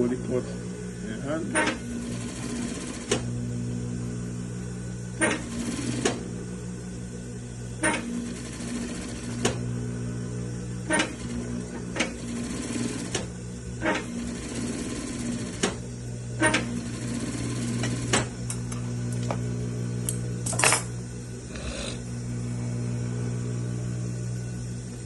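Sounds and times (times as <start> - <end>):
electric sewing machine running: 1.2 - 3.3, 5.2 - 6.4, 7.9 - 19.9.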